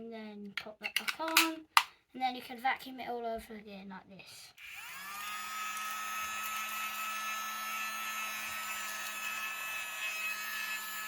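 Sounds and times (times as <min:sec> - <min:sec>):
handheld vacuum cleaner running: 0:04.6 - 0:11.0.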